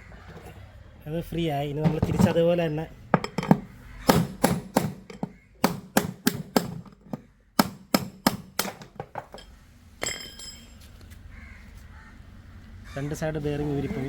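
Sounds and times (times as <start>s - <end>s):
hammer striking metal rod: 3.2s - 9.4s
ringing metallic clink: 9.2s - 10.8s.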